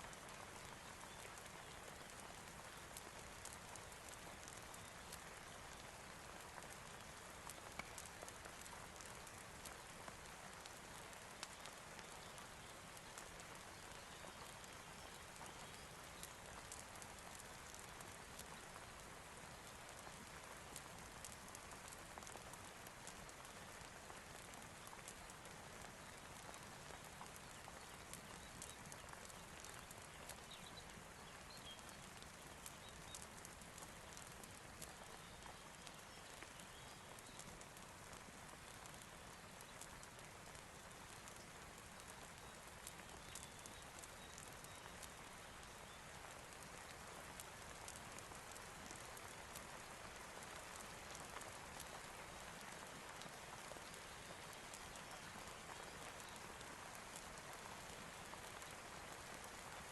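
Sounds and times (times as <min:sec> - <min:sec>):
soft steady rain: 0:00.0 - 0:59.9.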